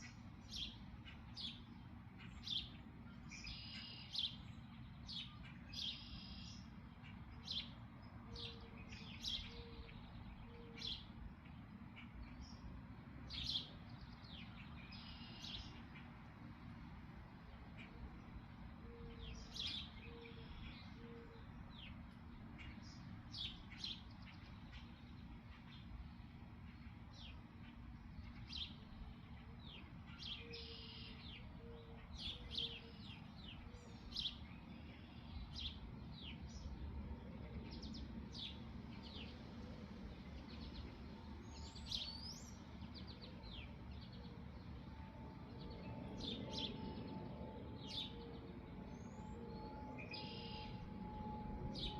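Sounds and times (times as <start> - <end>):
small birds chirping: 37.6 - 44.8.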